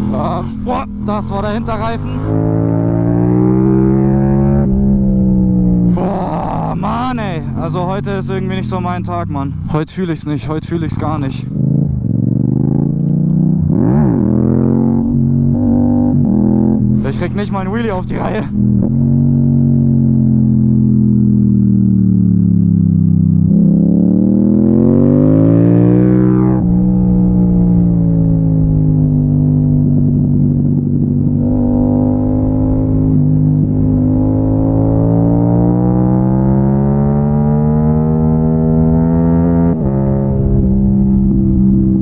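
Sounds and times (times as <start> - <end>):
motorcycle engine revving: 0.0 - 9.8, 10.7 - 42.0.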